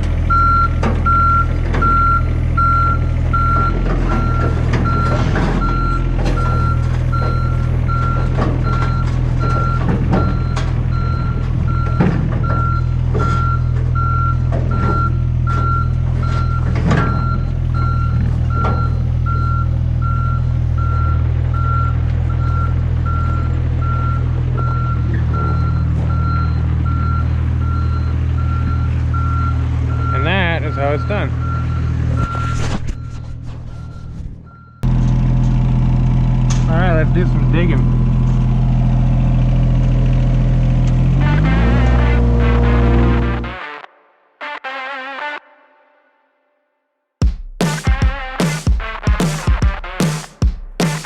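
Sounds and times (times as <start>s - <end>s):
excavator engine running: 0.0s - 43.9s
excavator travel alarm beeping: 0.2s - 34.9s.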